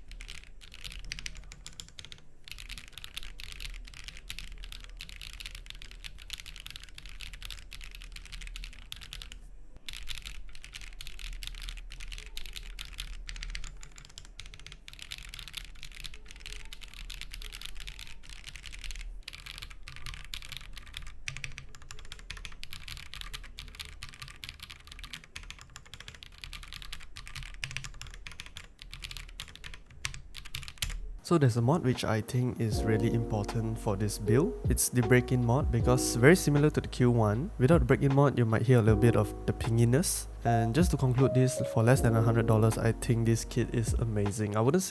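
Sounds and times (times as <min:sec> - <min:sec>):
mechanical keyboard typing: 0:00.0 - 0:31.1.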